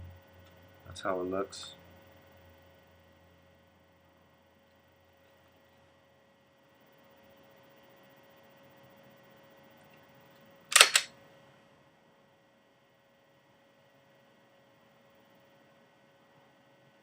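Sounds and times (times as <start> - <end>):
faint steady hum: 0.0 - 17.0
sharp mechanical clicks: 10.7 - 11.1.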